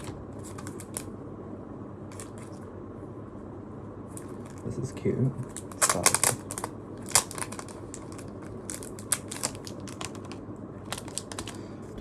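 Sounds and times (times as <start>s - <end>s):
short crackles and clicks: 5.4s - 11.6s
plastic and paper crinkling: 5.4s - 11.7s.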